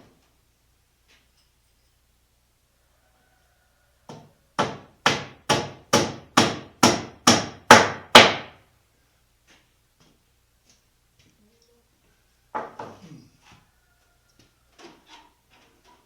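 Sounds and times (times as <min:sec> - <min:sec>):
hammer hitting nail into wood: 0:04.1 - 0:08.6.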